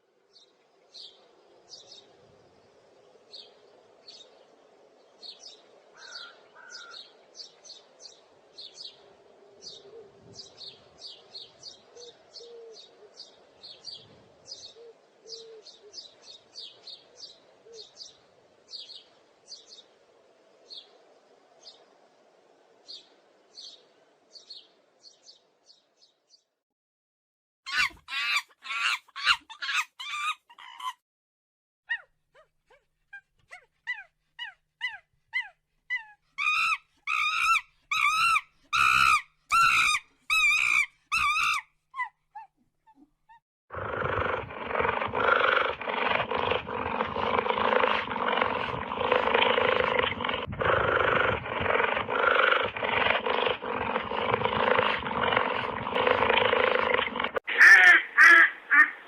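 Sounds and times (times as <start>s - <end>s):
din of animal noise: 5.2s - 7.5s, 27.7s - 31.0s, 31.9s - 59.0s
repeated animal calls: 6.0s - 7.0s, 27.7s - 31.0s, 31.9s - 59.0s.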